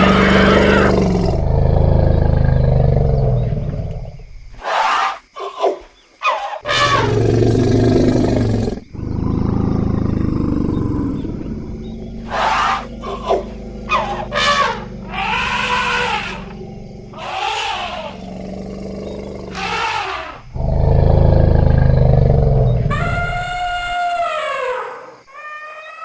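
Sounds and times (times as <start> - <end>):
elephants trumpeting: 0.0 - 1.6, 6.2 - 7.4, 10.5 - 24.7
high drawn-out elephant call: 6.2 - 7.2, 12.2 - 18.3, 19.5 - 20.4, 22.9 - 26.0
deep elephant call: 6.2 - 24.9.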